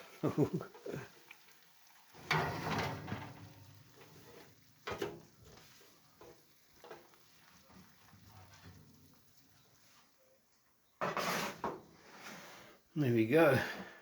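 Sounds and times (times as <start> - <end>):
roast sizzling: 0.0 - 10.2
metal tray scraping: 2.2 - 5.3, 11.0 - 12.3.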